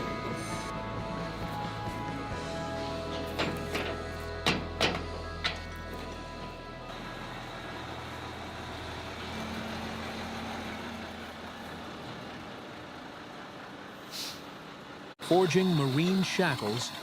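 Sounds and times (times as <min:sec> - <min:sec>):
industrial machinery rumbling hiss: 0:14.0 - 0:14.7
short hiss: 0:14.1 - 0:14.5.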